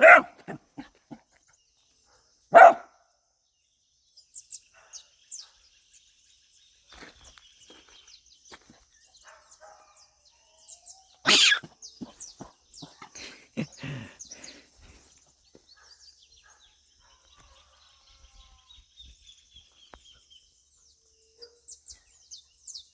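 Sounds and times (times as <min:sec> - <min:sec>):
dog barking sharply: 0:00.0 - 0:00.6, 0:02.5 - 0:02.9, 0:11.3 - 0:11.7.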